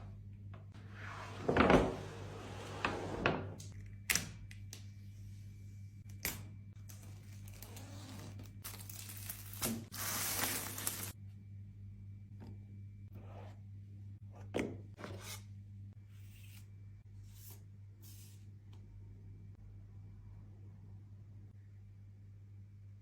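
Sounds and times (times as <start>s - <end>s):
packaging rustling and crinkling: 7.0s - 11.2s
packaging tearing: 7.0s - 11.2s.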